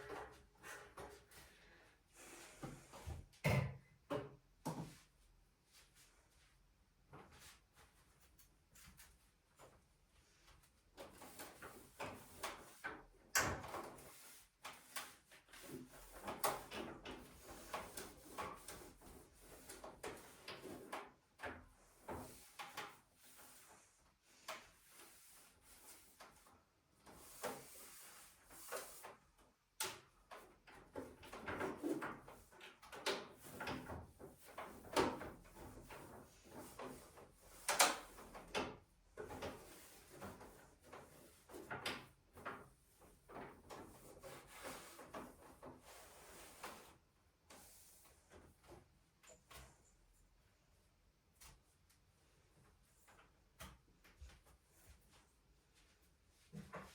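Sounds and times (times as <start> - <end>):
objects sliding and rubbing: 43.3 - 48.7.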